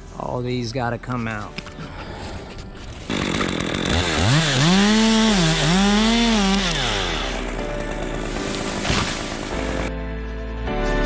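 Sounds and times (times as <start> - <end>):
chainsaw revving: 2.9 - 9.9.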